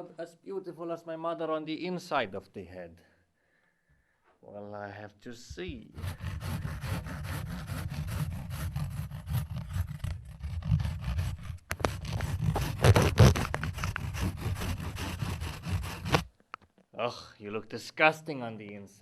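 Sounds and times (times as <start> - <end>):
saw cutting back and forth: 5.8 - 16.3.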